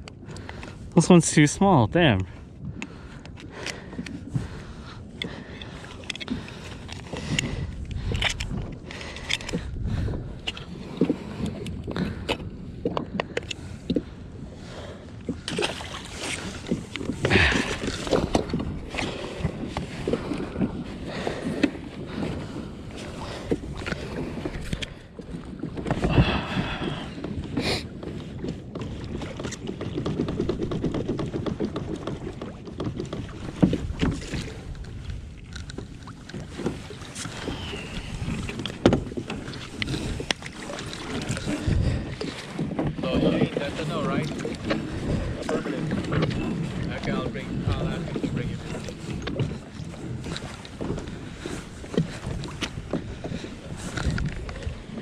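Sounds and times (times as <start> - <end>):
water sloshing around kayak: 0.0 - 55.0
gear knocking on hull: 25.6 - 34.9.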